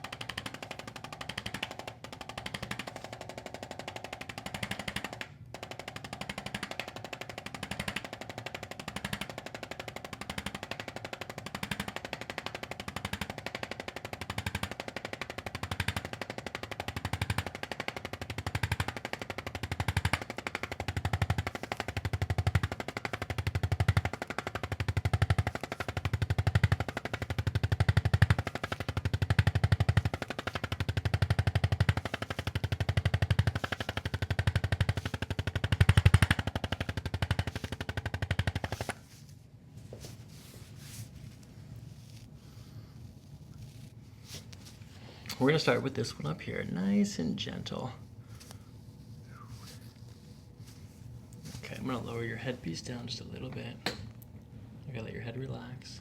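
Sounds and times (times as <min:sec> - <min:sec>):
motorized instrument rapidly tapping: 0:00.0 - 0:39.2.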